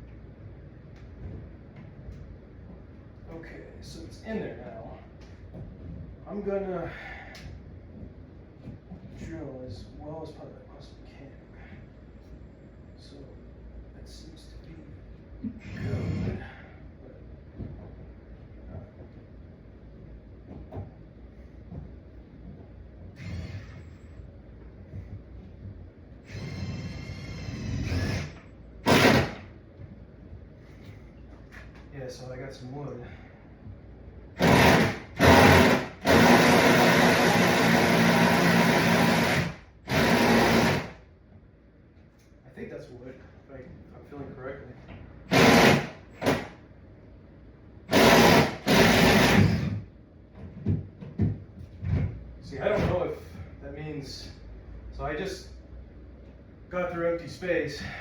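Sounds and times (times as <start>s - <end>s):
loud burst of noise: 23.2s - 23.9s, 26.2s - 29.5s, 34.4s - 41.0s, 45.3s - 46.6s, 47.9s - 49.8s
power drill boring into wood: 26.3s - 29.4s, 34.4s - 40.9s, 45.3s - 46.5s, 47.9s - 49.8s.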